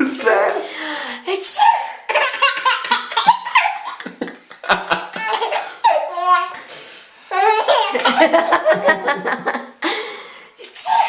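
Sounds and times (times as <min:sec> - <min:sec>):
baby laughing: 0:01.5 - 0:04.2, 0:05.0 - 0:06.6, 0:07.3 - 0:09.1.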